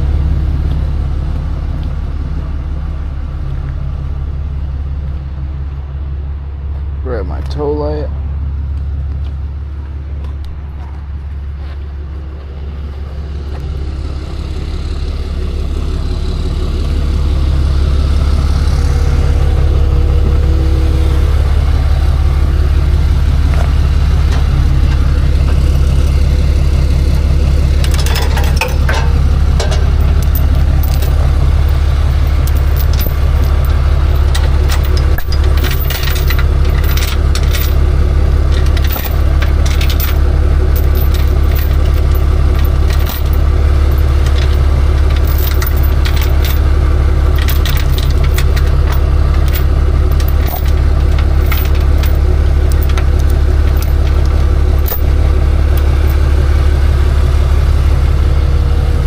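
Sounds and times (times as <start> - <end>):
truck engine droning: 0.0 - 59.0
metal clanks and rattles: 23.4 - 56.2.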